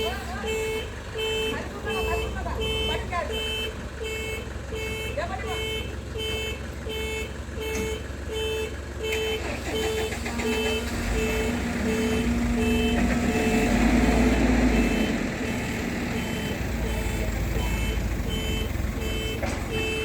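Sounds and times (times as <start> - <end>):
vehicle warning beeper: 0.0 - 20.0
engine revving: 9.0 - 20.0.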